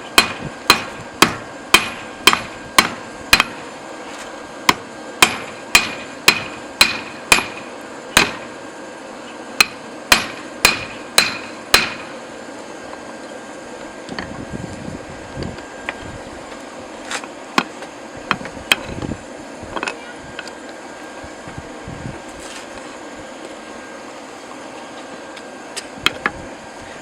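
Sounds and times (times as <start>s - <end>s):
forge air blower whirring: 0.0s - 27.0s.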